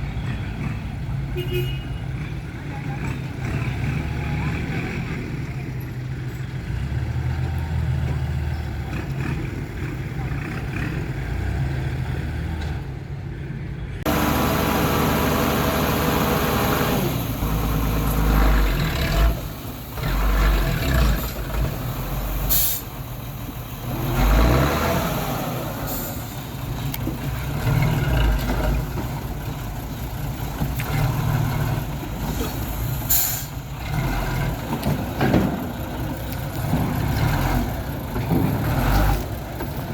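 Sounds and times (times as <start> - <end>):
heavy diesel engines running: 0.0 - 39.9
short hisses: 22.5 - 23.0, 33.1 - 33.6.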